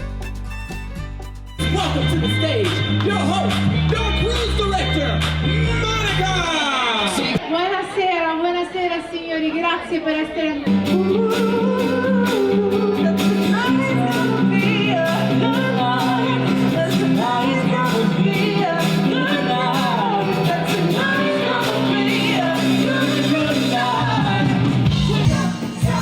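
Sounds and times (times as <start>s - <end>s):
music with bass and beat: 0.0s - 6.5s, 10.7s - 26.0s
person singing: 10.7s - 26.0s.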